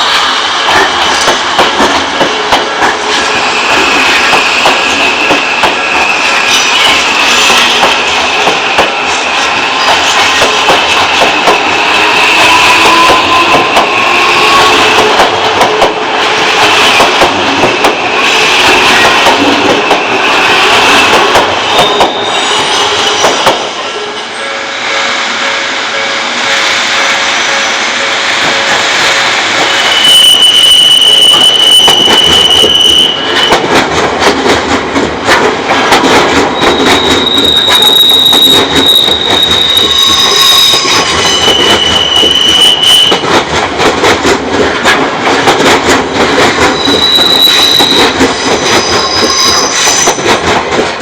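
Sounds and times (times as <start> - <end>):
high wheel squeals: 21.7 - 23.4, 29.6 - 33.6, 36.6 - 43.2, 46.7 - 50.2
wheels clicking over rail joints: 33.3 - 42.4, 43.1 - 51.0.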